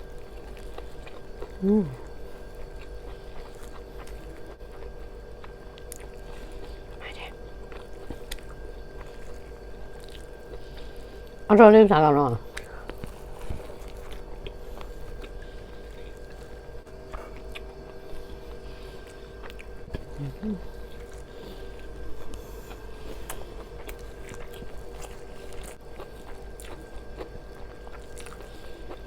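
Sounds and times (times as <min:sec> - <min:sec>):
person biting and chewing food: 0:00.0 - 0:07.0, 0:07.6 - 0:11.5, 0:12.4 - 0:29.0
steady hum: 0:00.0 - 0:29.0.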